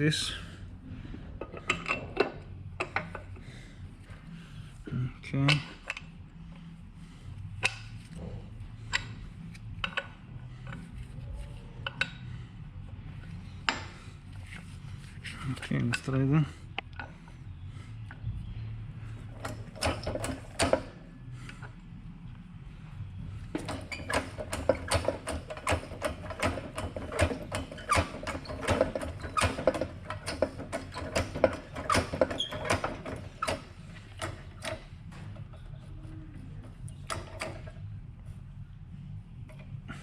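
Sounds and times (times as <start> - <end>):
low steady hum: 0.0 - 40.0.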